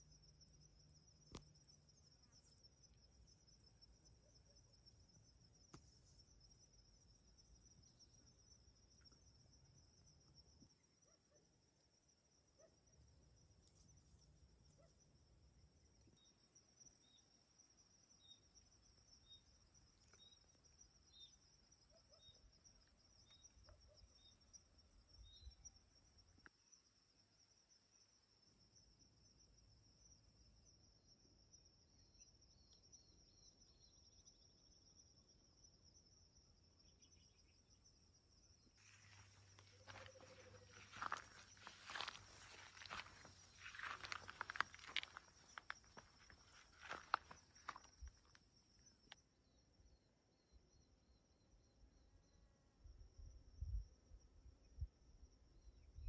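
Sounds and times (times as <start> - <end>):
crickets trilling: 11.9 - 56.0
insects trilling: 36.8 - 49.6.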